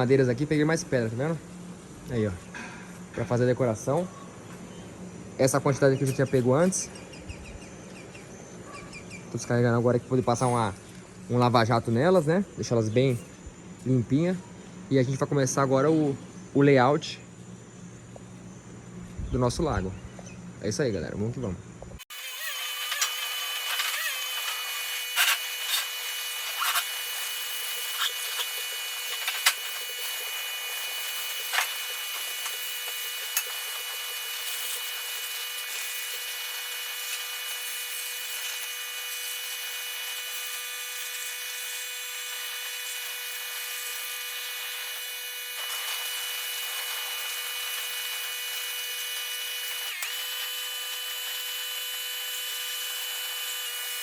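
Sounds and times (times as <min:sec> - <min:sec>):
pressure washer motor whine: 0:22.1 - 0:54.0.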